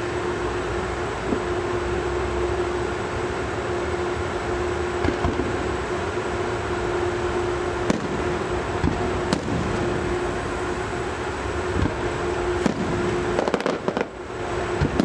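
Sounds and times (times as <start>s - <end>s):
background rumble: 0.0s - 15.0s
low hum: 0.0s - 15.0s
fireworks bangs: 7.8s - 10.2s, 11.8s - 15.0s.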